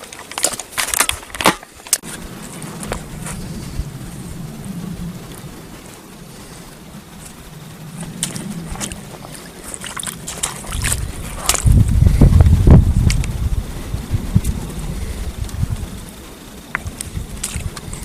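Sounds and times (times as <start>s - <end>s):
gear handling clicks and knocks: 0.0s - 2.1s
wind buffeting microphone: 0.0s - 18.0s.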